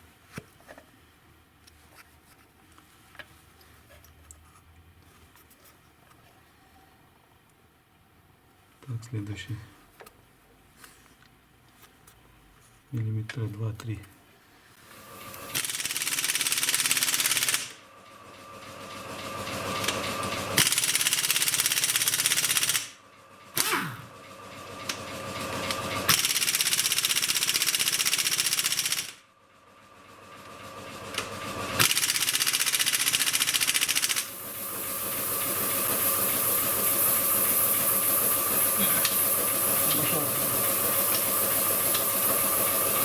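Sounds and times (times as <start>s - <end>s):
impact wrench rattling: 31.8s - 34.3s.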